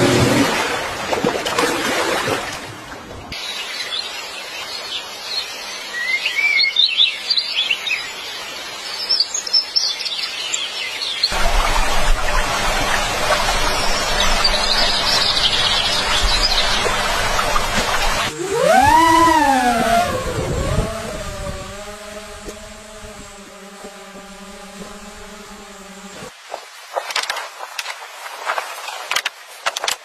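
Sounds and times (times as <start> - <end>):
birds chirping: 3.4 - 26.3.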